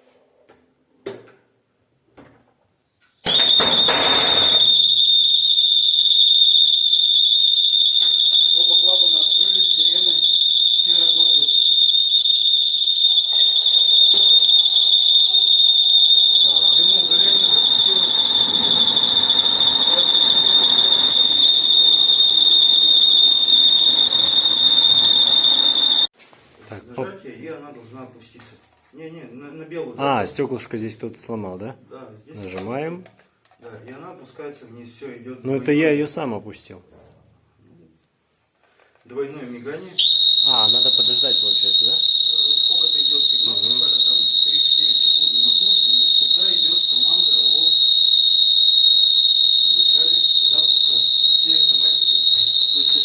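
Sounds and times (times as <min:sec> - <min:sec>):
fire alarm siren: 0:03.2 - 0:26.1, 0:40.0 - 0:53.0.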